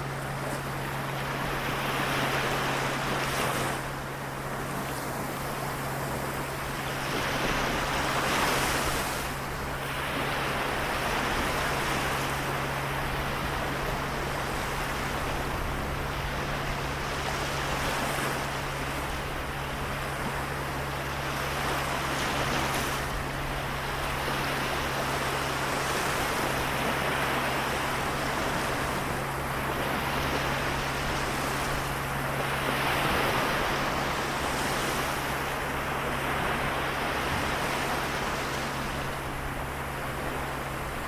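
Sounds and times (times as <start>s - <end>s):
sea waves washing onto shore: 0.0s - 41.0s
steady low hum: 0.0s - 41.0s.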